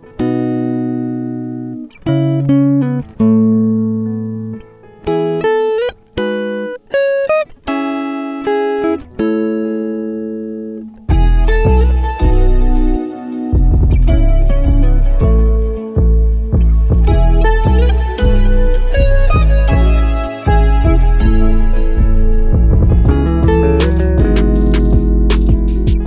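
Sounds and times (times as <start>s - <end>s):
plucked string melody: 0.0s - 26.0s
deep bass: 11.1s - 26.0s.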